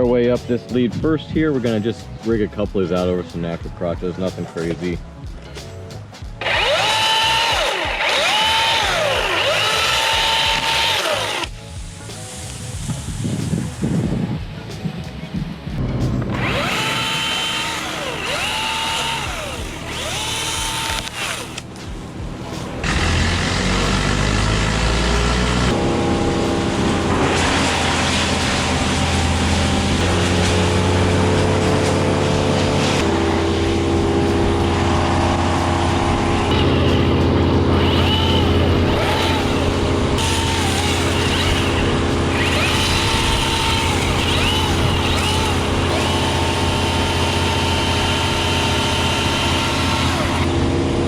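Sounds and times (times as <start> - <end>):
chainsaw cutting wood: 6.4 - 11.6, 16.2 - 21.8, 22.7 - 25.9, 26.5 - 33.3, 37.7 - 50.6
electric chainsaw revving: 6.4 - 11.6, 16.3 - 21.7, 22.7 - 50.6.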